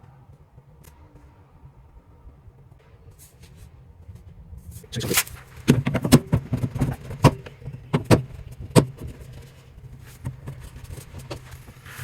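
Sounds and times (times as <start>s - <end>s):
short scraping rush: 4.6s - 7.6s, 9.2s - 12.0s.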